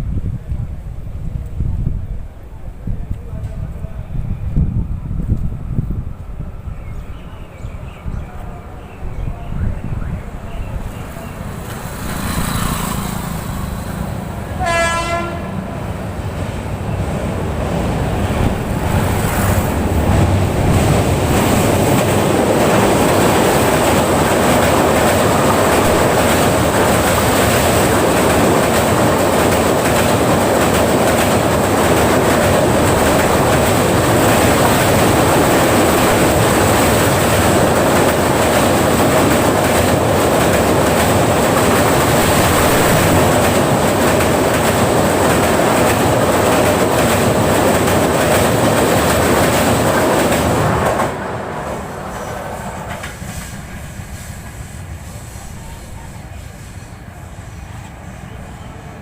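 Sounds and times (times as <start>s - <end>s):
train rumbling over bridge: 0.0s - 59.0s
train horn blast: 14.5s - 15.6s.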